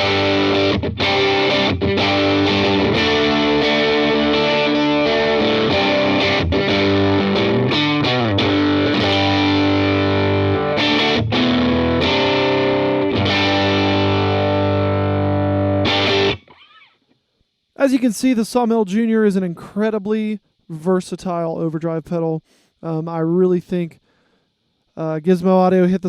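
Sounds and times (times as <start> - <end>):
overdriven electric guitar chords: 0.0 - 16.6.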